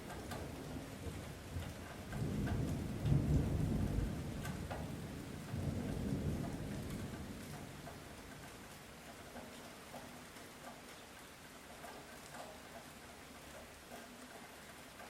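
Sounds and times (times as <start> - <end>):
light rain with drips: 0.0 - 15.0
distant thunder rumbling: 0.2 - 8.2.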